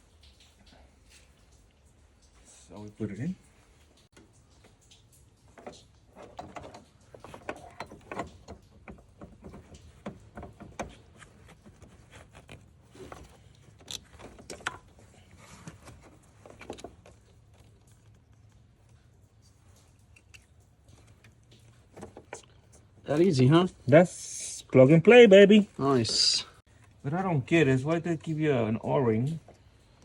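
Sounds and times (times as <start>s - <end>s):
plastic clicks and rattles: 4.2s - 18.3s.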